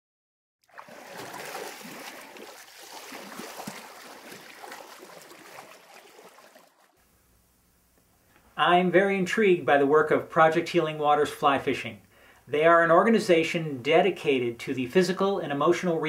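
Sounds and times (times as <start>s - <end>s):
rushing burbling water: 0.7s - 7.0s.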